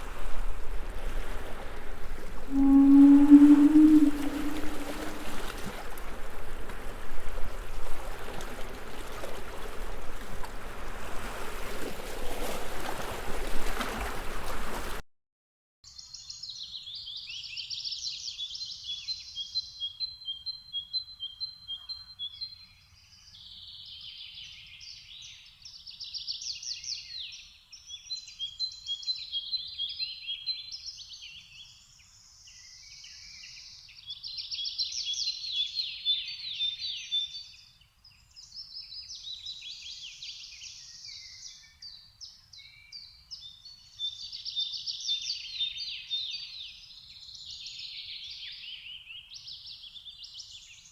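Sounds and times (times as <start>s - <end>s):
songbird singing trills: 2.5s - 5.5s.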